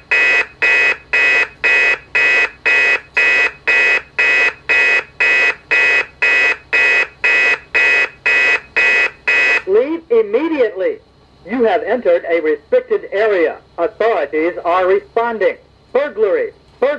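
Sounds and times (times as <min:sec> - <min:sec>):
pulsed alarm beep: 0:00.0 - 0:09.7.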